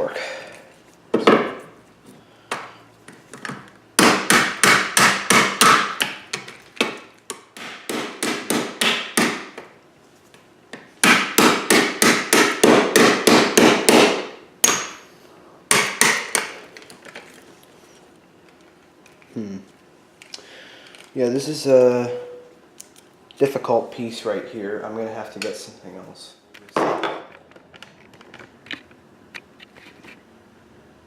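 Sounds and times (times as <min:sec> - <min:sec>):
rapid hammer strikes on metal: 0:04.0 - 0:06.1, 0:07.6 - 0:09.5, 0:11.0 - 0:15.0.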